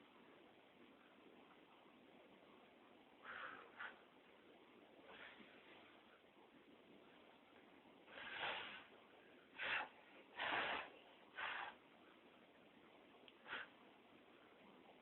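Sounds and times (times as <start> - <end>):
breathy puffs of air: 3.2 - 4.1, 8.1 - 11.9.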